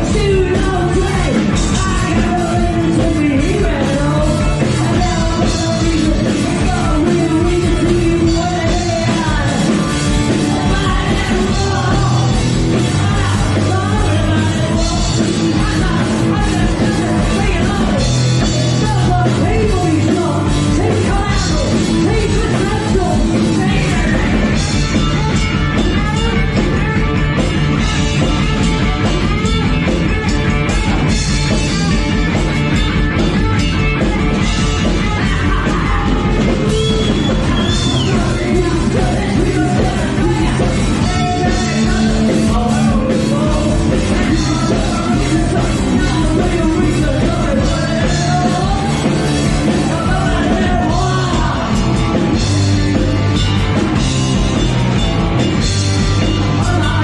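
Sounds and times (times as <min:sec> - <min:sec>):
punk rock band playing: 0:00.0 - 0:57.0
shouted singing: 0:35.2 - 0:52.4.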